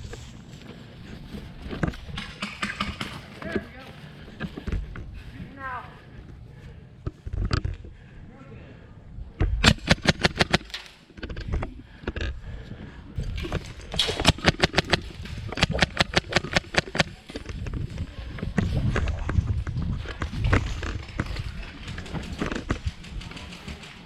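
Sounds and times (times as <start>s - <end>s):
airsoft guns firing bursts: 2.1s - 3.4s, 9.6s - 11.0s, 14.0s - 17.2s, 21.1s - 24.0s.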